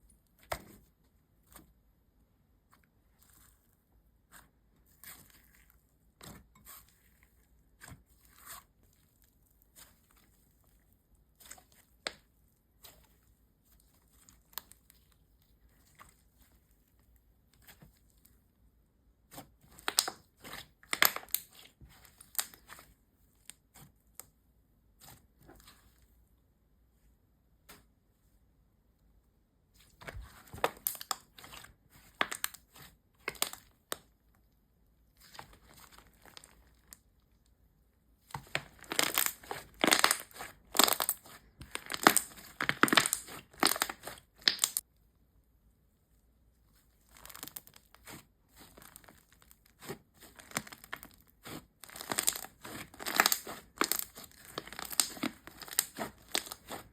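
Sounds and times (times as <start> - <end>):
slime crackling and popping: 19.4 - 22.8, 30.2 - 34.0, 38.3 - 44.8, 47.0 - 56.9.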